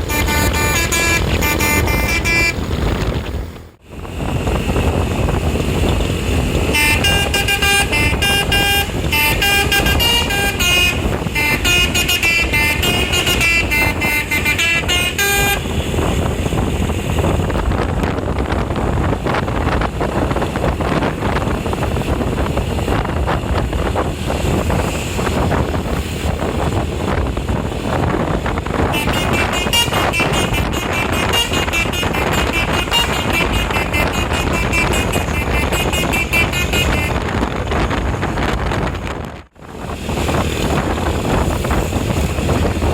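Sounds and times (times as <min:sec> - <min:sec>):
bus horn playing a tune: 0:00.0 - 0:03.2, 0:06.5 - 0:16.6, 0:28.7 - 0:37.8
engine and road rumble: 0:00.0 - 0:42.9.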